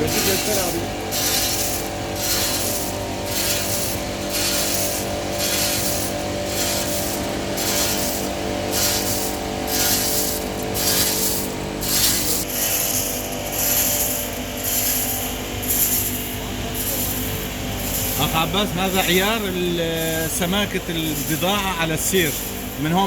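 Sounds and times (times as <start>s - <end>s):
motor hum: 0.0s - 23.0s
pulsing rasping hiss: 0.0s - 23.0s.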